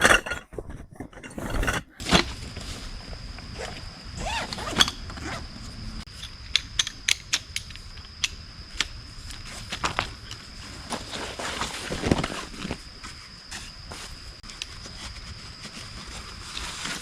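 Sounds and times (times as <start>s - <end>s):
small hard objects scraping: 0.0s - 2.8s.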